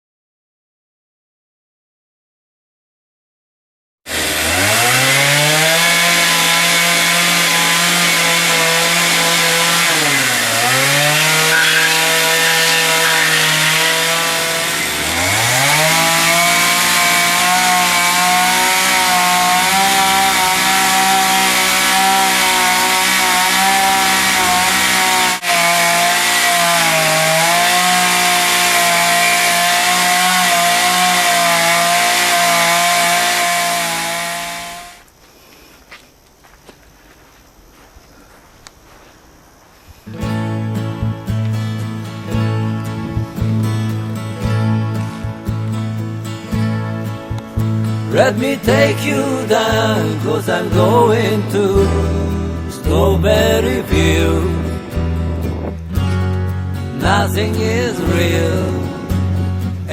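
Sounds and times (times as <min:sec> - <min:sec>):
chainsaw running: 0:04.1 - 0:35.1, 0:41.8 - 0:59.9.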